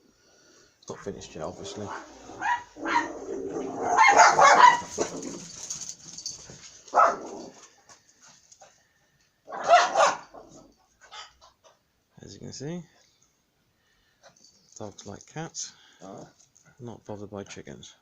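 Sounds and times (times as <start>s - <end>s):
dog barking: 1.7s - 5.7s, 6.9s - 7.6s, 9.5s - 11.4s.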